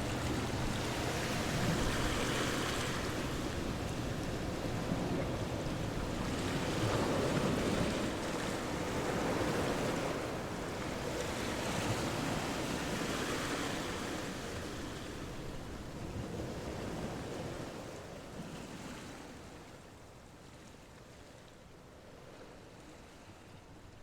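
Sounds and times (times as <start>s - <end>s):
ocean surf washing ashore: 0.0s - 18.5s.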